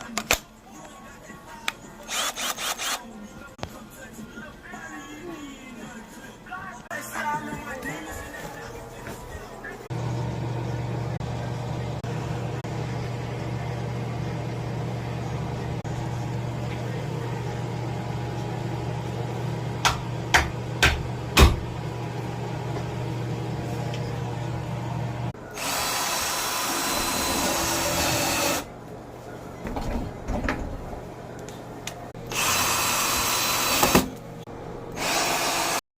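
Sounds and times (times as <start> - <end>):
cordless drill running: 2.1 - 3.0, 25.5 - 28.7, 32.3 - 34.1, 35.0 - 35.8.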